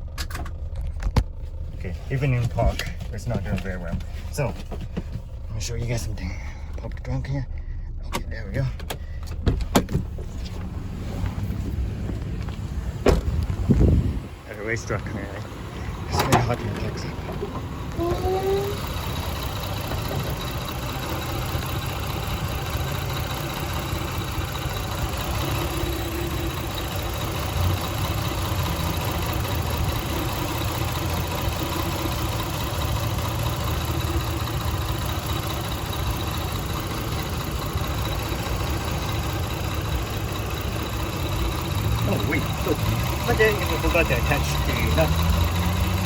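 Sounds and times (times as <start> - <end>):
car engine idling roughly: 0.0 - 10.6, 14.5 - 46.0
short thump: 13.0 - 13.9.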